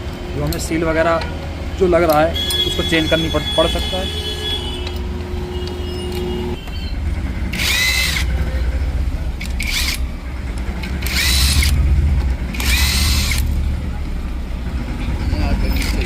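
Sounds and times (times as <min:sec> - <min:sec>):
impact gun whirring: 0:07.5 - 0:08.4, 0:09.4 - 0:13.6.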